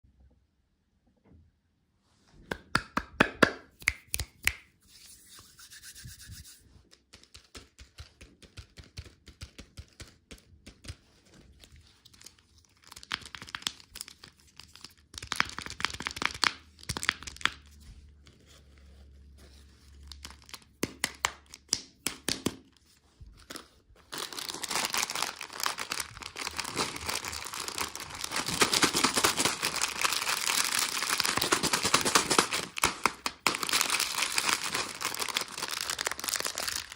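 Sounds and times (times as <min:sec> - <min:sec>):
candy wrappers crinkling: 0:06.9 - 0:17.7, 0:19.9 - 0:36.9.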